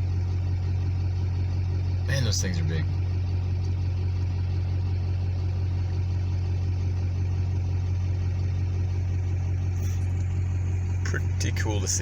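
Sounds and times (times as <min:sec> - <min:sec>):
road noise: 0:00.0 - 0:03.8, 0:09.0 - 0:12.0
vehicle engine drone: 0:00.0 - 0:12.0.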